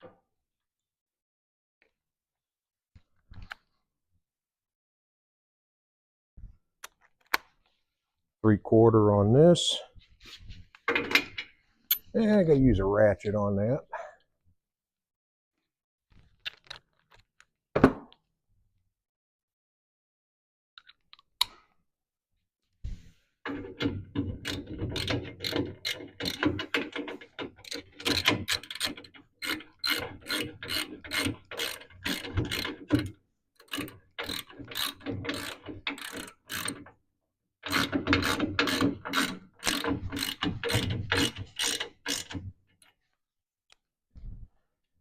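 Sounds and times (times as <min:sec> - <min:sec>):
ratchet wrench clicking: 0:33.6 - 0:36.8.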